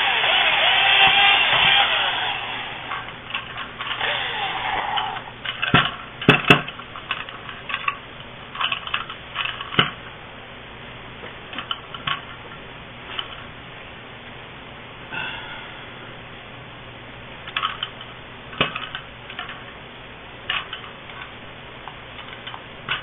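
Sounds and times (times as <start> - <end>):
whirring sound: 0.0 - 3.1
small tools clicking and knocking: 2.9 - 10.0, 17.5 - 19.6, 20.5 - 21.3, 21.9 - 23.0.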